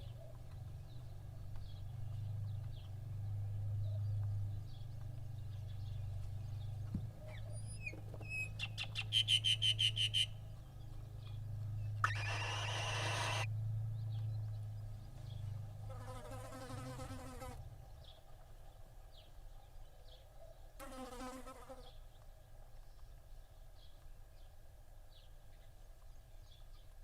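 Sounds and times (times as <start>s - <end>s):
low hum: 10.4s - 15.7s
owl chicks hissing begging calls: 12.0s - 13.5s.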